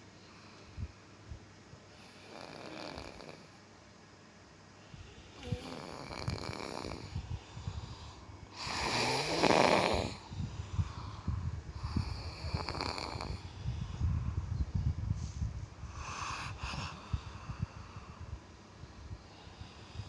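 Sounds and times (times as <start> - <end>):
person snoring: 2.1 - 3.4, 5.4 - 14.0.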